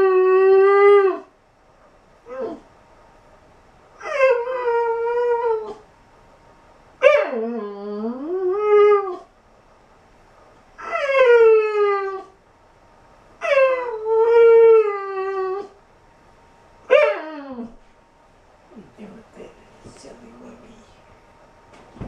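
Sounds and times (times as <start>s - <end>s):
dog howling: 0.0s - 1.3s, 2.2s - 2.7s, 4.0s - 5.9s, 7.0s - 9.3s, 10.8s - 12.4s, 13.4s - 15.8s, 16.9s - 17.8s
dog yelping: 10.8s - 12.4s, 13.4s - 15.8s.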